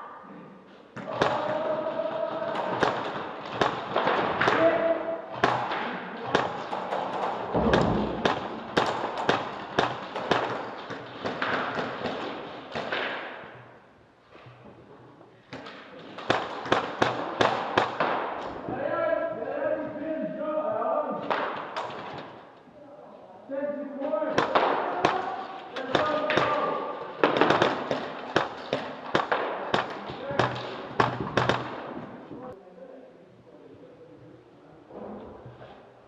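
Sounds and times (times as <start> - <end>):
sharp thuds and knocks: 7.5 - 10.5
low rumble: 7.6 - 8.8.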